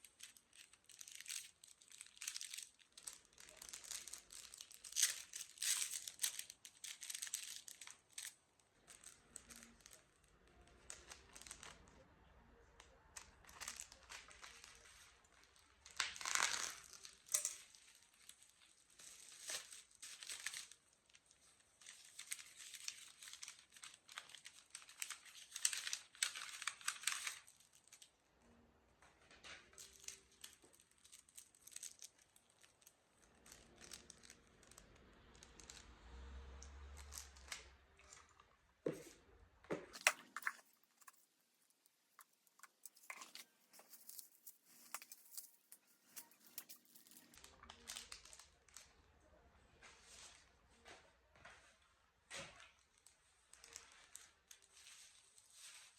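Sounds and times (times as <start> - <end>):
plastic packaging crinkling: 0.0 - 12.0, 12.6 - 28.2, 29.2 - 49.1, 52.6 - 55.9.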